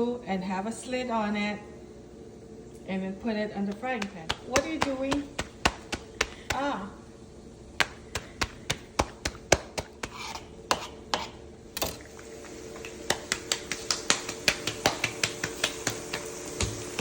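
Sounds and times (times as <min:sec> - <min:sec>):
dough frying in hot oil: 0:03.7 - 0:17.0.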